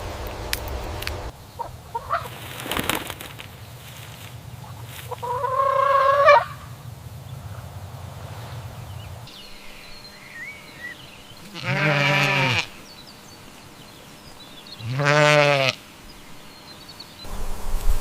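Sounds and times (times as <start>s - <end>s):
faint bird chirps: 9.3s - 11.6s
farm animal bleating: 11.3s - 12.8s, 14.8s - 15.8s.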